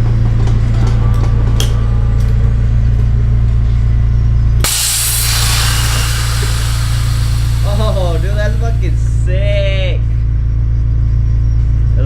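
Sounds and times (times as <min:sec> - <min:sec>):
steady low hum: 0:00.1 - 0:11.8
loud air hiss: 0:04.6 - 0:09.3.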